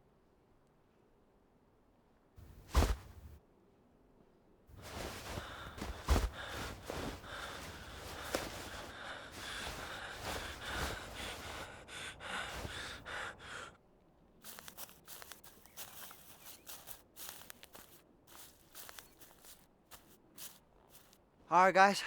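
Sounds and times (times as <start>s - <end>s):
footsteps: 2.4s - 3.4s, 4.8s - 13.2s, 14.4s - 21.2s
person breathing heavily: 2.4s - 3.4s, 4.8s - 13.8s
rustling and handling noise: 2.4s - 3.4s, 4.7s - 13.1s, 14.4s - 21.4s.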